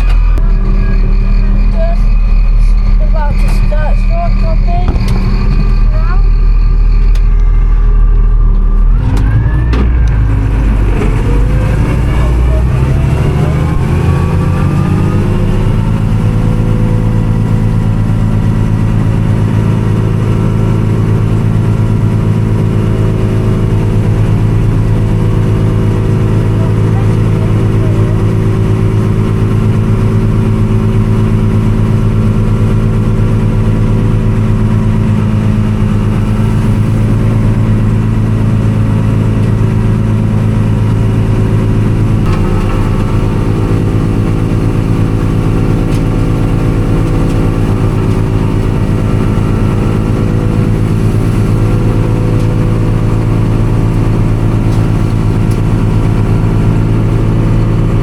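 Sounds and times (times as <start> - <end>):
farm machine engine running: 0.0 - 58.0.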